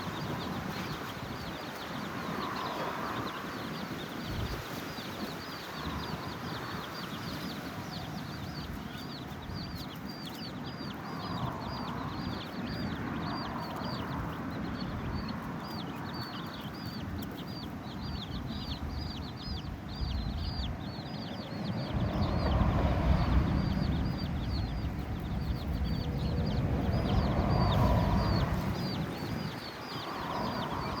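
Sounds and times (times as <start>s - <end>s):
chicks peeping: 0.0s - 31.0s
low rumble: 21.8s - 29.2s.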